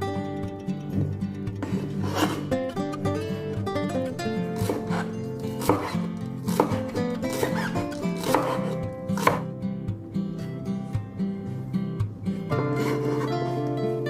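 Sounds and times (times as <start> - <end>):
guitar music: 0.0 - 14.0
knife chopping on cutting board: 1.7 - 2.5, 4.6 - 9.5, 12.8 - 13.3.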